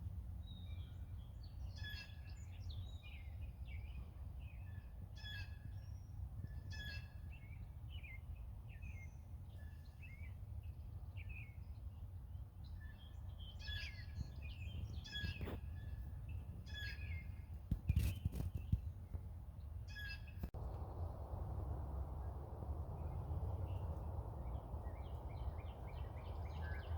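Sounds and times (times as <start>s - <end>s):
songbirds chirping: 0.4s - 26.9s
steady low rumble: 20.4s - 26.9s.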